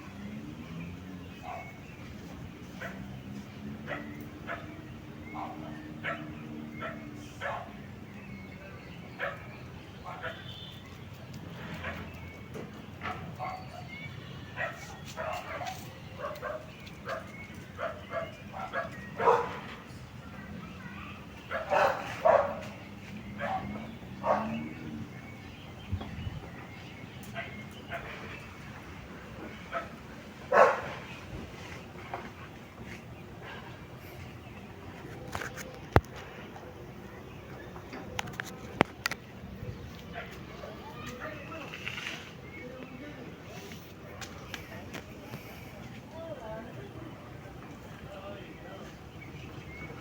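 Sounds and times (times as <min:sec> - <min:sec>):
dog barking: 0:01.4 - 0:01.8, 0:02.8 - 0:03.1, 0:03.8 - 0:07.8, 0:09.2 - 0:10.8, 0:11.8 - 0:12.1, 0:14.6 - 0:19.7, 0:21.5 - 0:22.8, 0:23.4 - 0:24.7, 0:27.4 - 0:28.2, 0:29.7 - 0:31.1.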